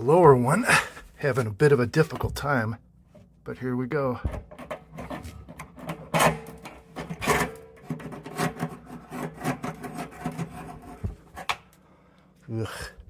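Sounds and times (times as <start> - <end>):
wrench scraping metal: 4.4 - 11.5
metal grinding strokes: 4.8 - 11.5.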